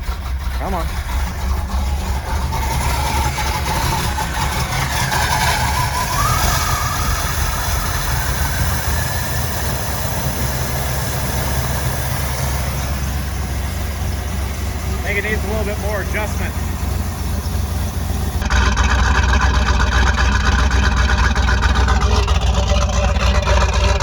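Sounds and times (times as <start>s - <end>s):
car engine idling: 0.0s - 24.0s
faint whine rising in pitch: 2.0s - 18.5s.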